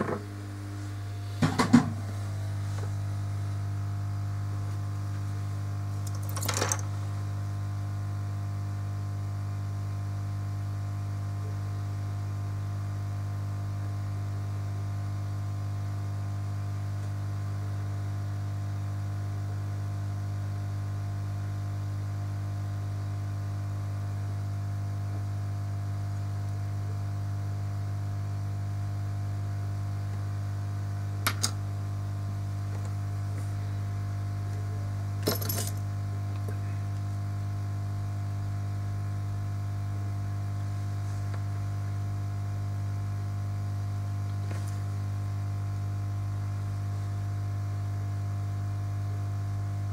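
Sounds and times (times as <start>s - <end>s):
electrical hum: 0.0s - 49.9s
small metallic clicks: 6.0s - 6.9s.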